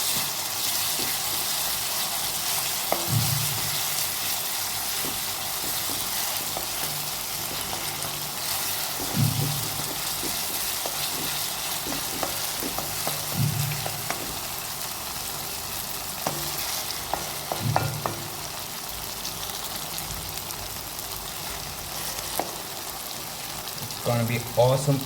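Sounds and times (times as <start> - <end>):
paste sizzling in a pan: 0.0 - 25.0
stirring clicks and scrapes: 4.8 - 14.4.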